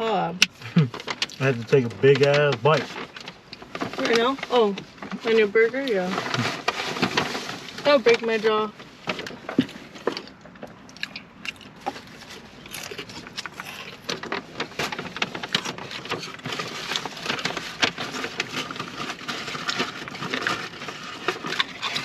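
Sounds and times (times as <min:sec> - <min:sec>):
person chewing food: 0:09.4 - 0:14.7.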